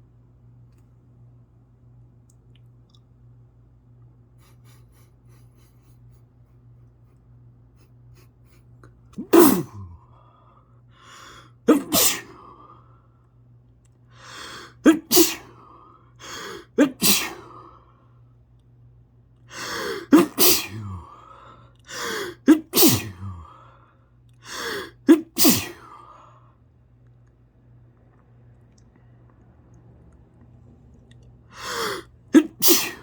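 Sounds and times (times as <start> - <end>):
person sneezing: 9.2 - 10.0, 11.6 - 12.6, 14.3 - 15.6, 16.2 - 17.7, 19.5 - 21.2, 21.9 - 23.6, 24.4 - 26.0, 31.6 - 33.0.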